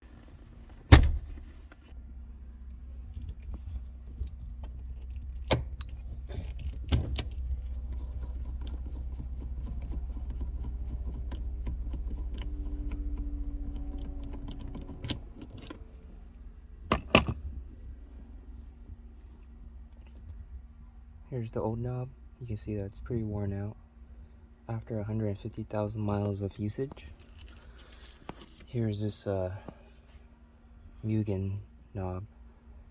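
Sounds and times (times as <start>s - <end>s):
car rumble: 0.0s - 25.4s.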